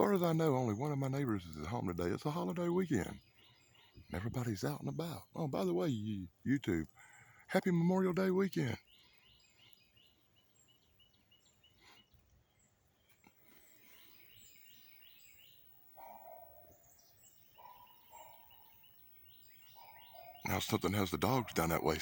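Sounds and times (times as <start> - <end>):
bird chirping: 0.0 - 22.0
distant dogs barking: 15.8 - 22.0.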